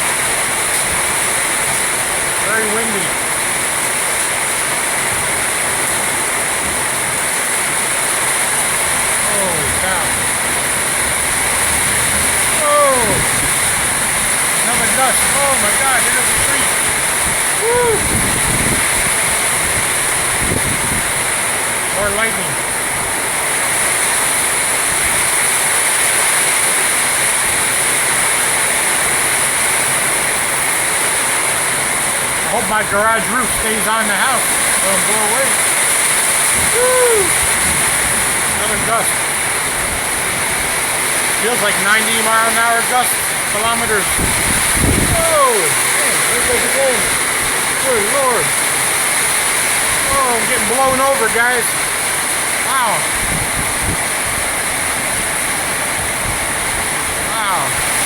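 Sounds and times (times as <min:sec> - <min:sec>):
heavy rain pouring: 0:00.0 - 0:58.0
strong wind gusts: 0:00.0 - 0:58.0.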